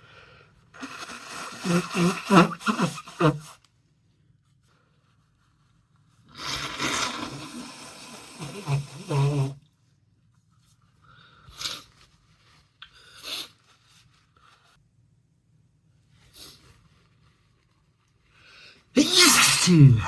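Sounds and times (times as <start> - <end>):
nose blowing into tissue: 0.8 - 3.6, 6.3 - 9.6, 13.0 - 13.9, 19.0 - 20.0
short sniffs: 0.8 - 3.6, 6.4 - 9.6, 11.3 - 12.1, 12.8 - 14.7, 16.2 - 17.0.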